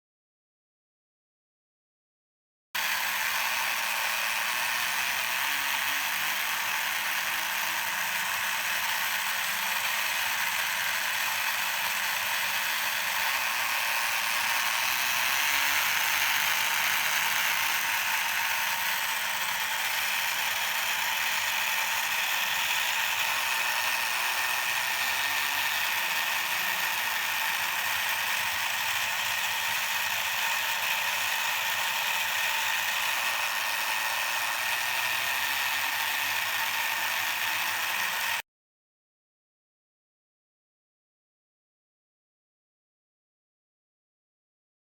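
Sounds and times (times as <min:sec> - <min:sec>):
toy electric motor and gears running: 0:02.8 - 0:38.4.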